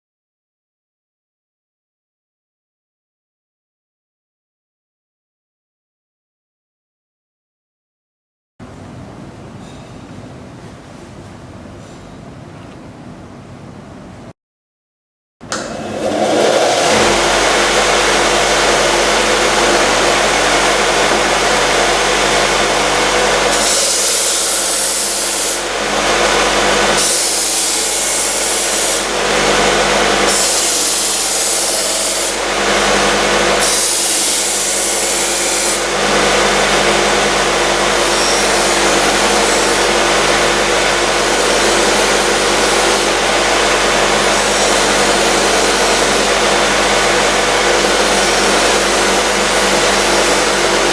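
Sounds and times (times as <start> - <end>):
sharpening machine motor hum: 15.5 - 50.9.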